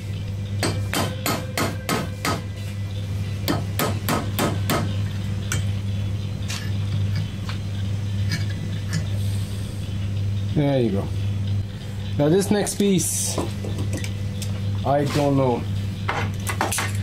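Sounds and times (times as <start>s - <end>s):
low hum: 0.0s - 17.0s
hammer striking steel: 0.6s - 2.4s, 3.4s - 4.9s.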